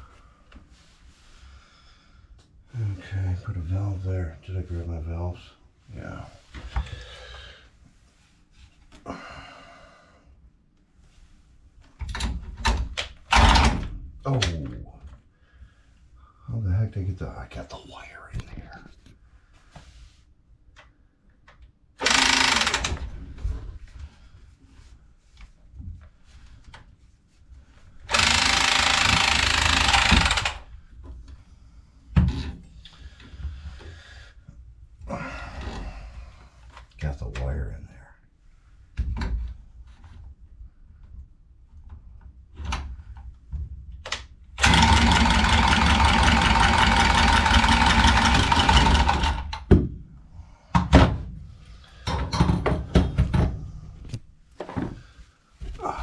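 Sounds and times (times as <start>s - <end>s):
power tool running: 22.0s - 23.0s, 28.1s - 30.7s, 44.6s - 49.5s.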